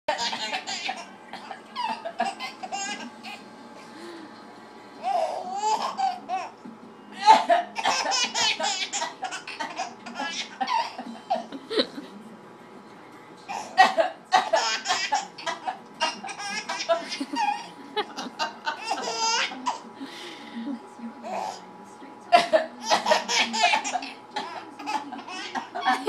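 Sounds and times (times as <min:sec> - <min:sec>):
baby giggling: 0:00.1 - 0:03.4, 0:05.0 - 0:06.5, 0:07.2 - 0:12.0, 0:13.5 - 0:19.8, 0:22.4 - 0:26.0.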